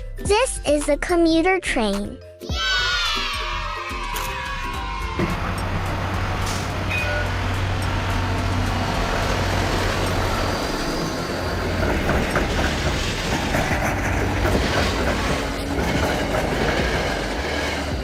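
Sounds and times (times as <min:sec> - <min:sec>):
rail noise: 0:05.1 - 0:18.0
train running: 0:05.2 - 0:18.0.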